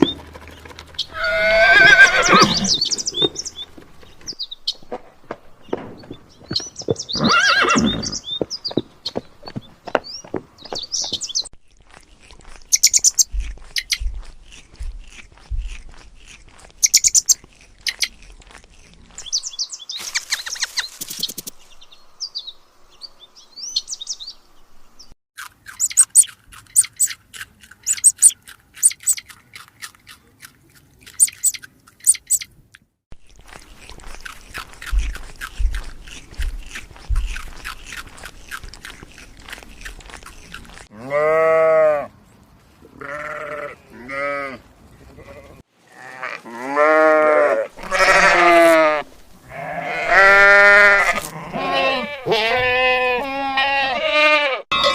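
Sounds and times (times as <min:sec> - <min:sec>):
birds chirping and trilling: 0:00.0 - 0:11.8, 0:12.4 - 0:29.4, 0:31.1 - 0:32.6.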